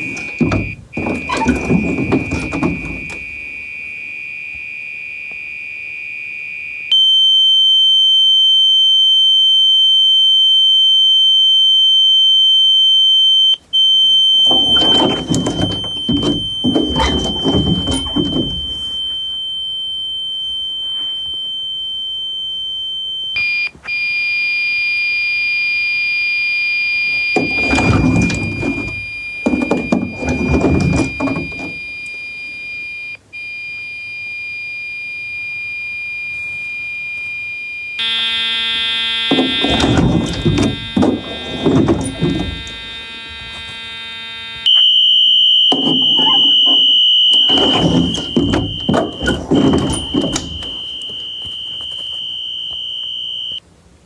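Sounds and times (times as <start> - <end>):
fire alarm horn tones: 0.0 - 53.6.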